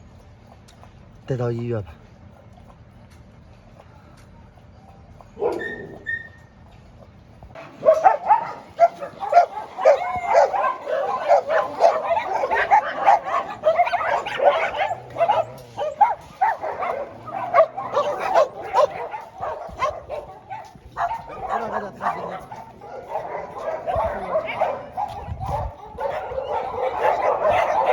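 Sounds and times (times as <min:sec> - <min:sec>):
many dogs barking: 0:05.2 - 0:06.5, 0:07.6 - 0:27.9.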